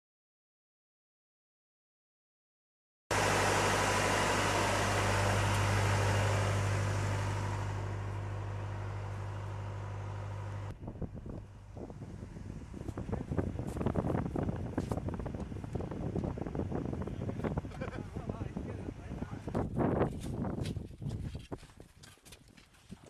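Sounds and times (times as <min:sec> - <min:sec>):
motor humming: 0:03.1 - 0:20.0
wind buffeting microphone: 0:10.7 - 0:22.0.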